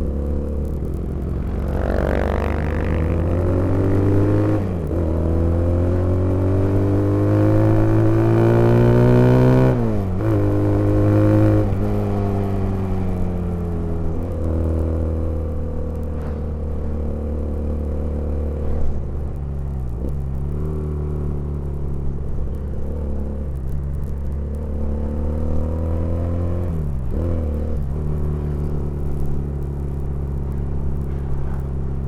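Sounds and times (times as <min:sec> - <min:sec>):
motorcycle engine running: 0:00.0 - 0:06.7.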